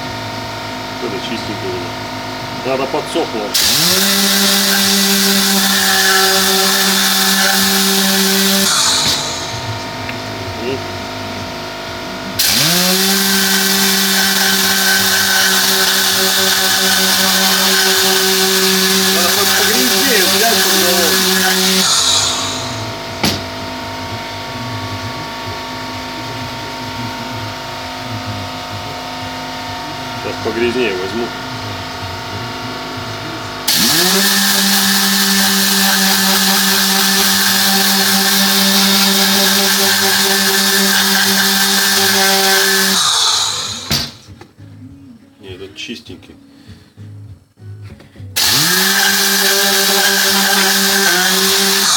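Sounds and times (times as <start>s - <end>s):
electric motor whine: 0.0s - 44.2s, 48.4s - 51.9s
steady hum: 4.6s - 33.7s.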